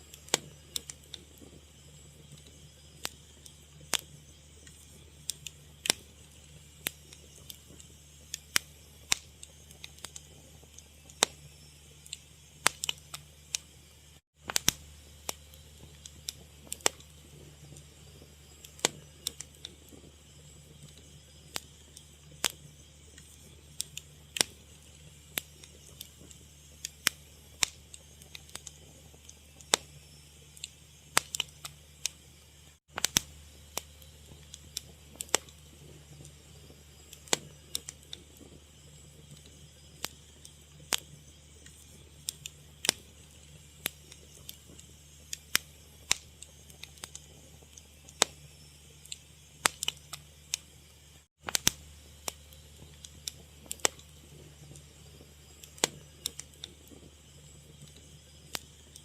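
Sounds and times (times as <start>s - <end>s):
fire crackling and popping: 0.0s - 59.0s
steady low hum: 0.0s - 59.0s.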